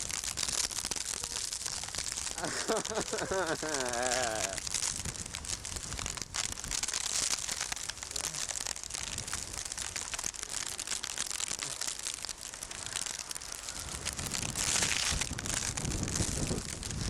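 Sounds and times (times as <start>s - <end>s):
wind buffeting microphone: 3.3s - 6.8s, 12.7s - 17.0s.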